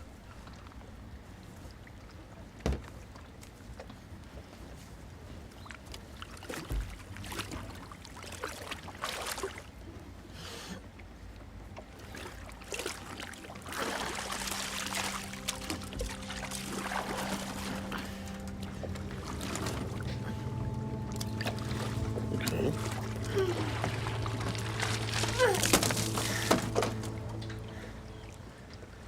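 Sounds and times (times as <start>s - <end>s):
water splashing and lapping: 0.4s - 29.0s
low steady hum: 9.5s - 29.0s.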